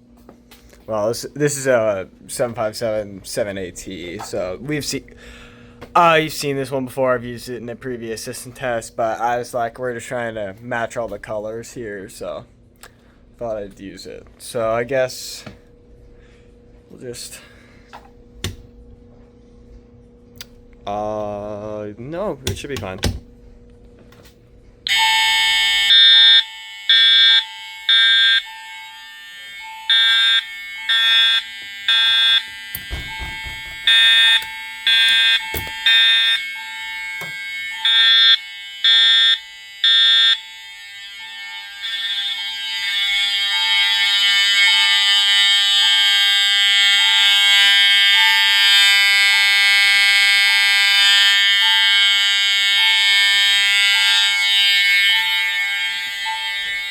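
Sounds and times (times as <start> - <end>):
fire alarm horns blasting: 0.7 - 18.7, 24.3 - 56.9
electronic chime: 24.9 - 45.4, 52.8 - 56.9.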